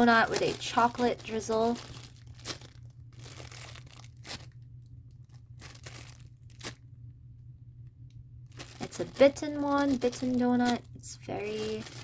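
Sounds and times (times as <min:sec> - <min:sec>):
plastic packaging crinkling: 0:00.0 - 0:06.9, 0:08.5 - 0:12.0
low steady hum: 0:00.0 - 0:12.0.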